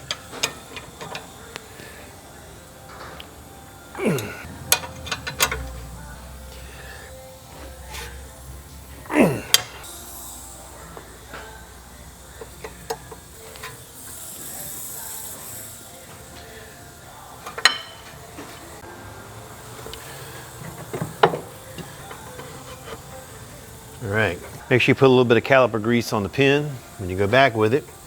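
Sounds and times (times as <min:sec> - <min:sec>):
metal tools clinking: 0:00.0 - 0:01.4, 0:04.0 - 0:05.8, 0:17.4 - 0:18.2.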